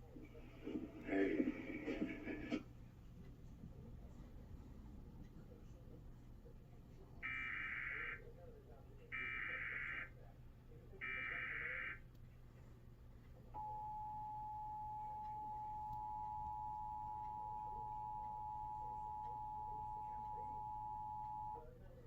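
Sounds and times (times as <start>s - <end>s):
low hum: 13.6s - 21.8s.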